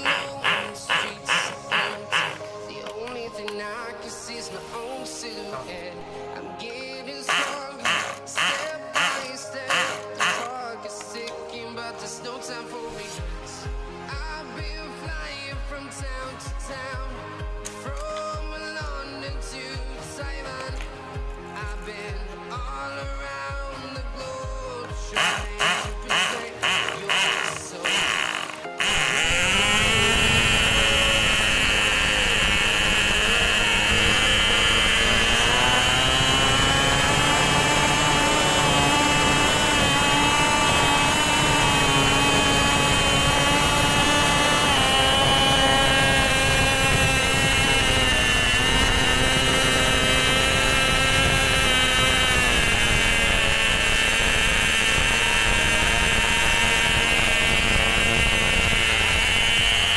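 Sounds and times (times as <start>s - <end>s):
model plane engine whining: 0.0s - 2.5s, 7.3s - 10.6s, 25.1s - 59.9s.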